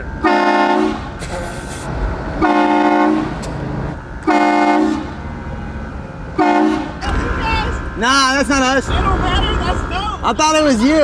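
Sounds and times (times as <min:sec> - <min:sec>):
road noise: 0:00.0 - 0:11.0
air horn blasts: 0:00.2 - 0:01.7, 0:02.4 - 0:03.5, 0:04.2 - 0:05.2, 0:06.4 - 0:07.1.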